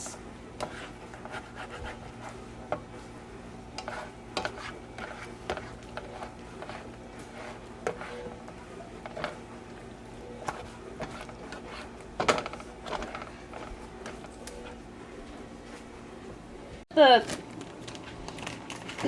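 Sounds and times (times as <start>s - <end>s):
utensil scraping frying pan: 0.6s - 3.0s, 3.7s - 9.5s, 10.2s - 14.8s.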